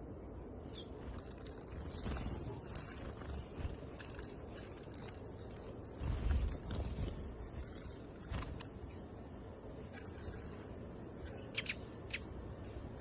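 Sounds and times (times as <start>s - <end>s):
small birds twittering: 0.0s - 13.0s
bird sharp chips: 11.0s - 12.4s.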